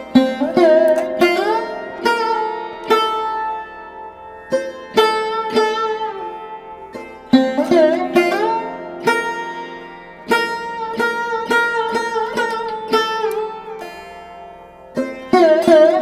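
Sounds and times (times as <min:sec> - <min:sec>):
plucked string notes: 0:00.0 - 0:16.0.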